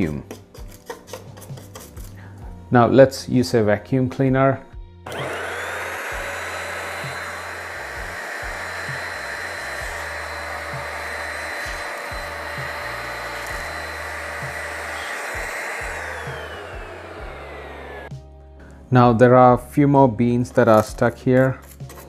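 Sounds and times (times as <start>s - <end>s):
vacuum cleaner running: 5.1s - 18.1s.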